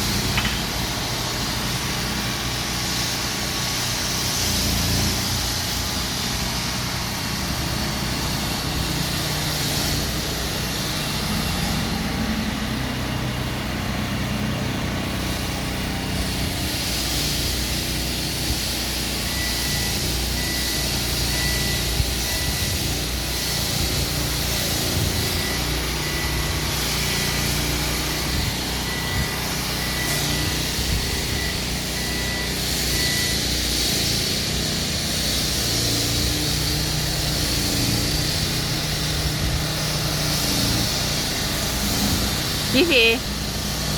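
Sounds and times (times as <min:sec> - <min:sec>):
diesel engines running: 0:00.0 - 0:43.9
faint reversing alarm beeping: 0:16.4 - 0:43.9.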